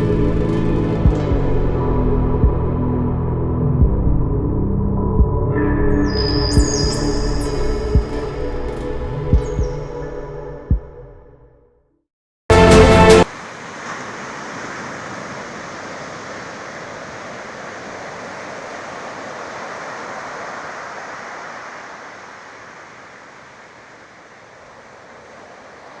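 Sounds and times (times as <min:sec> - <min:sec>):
steady rushing noise: 0:13.2 - 0:26.0.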